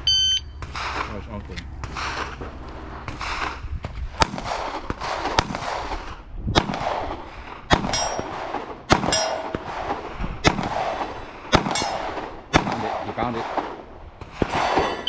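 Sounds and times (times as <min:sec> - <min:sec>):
pistol shots: 0:04.2 - 0:15.0
metallic ring: 0:07.9 - 0:08.2, 0:09.1 - 0:09.6, 0:14.8 - 0:15.0.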